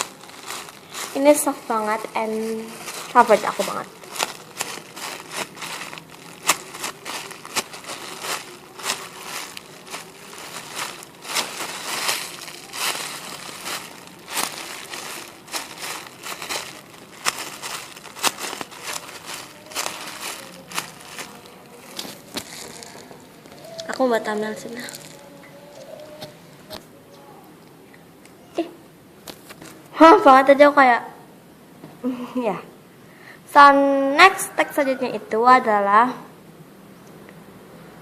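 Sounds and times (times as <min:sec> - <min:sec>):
foam toy crinkly crackling: 0:00.0 - 0:26.9.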